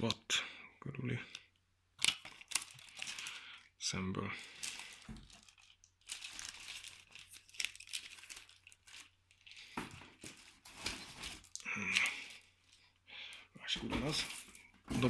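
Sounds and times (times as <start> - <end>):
packaging crinkling and rustling: 2.0 - 13.0.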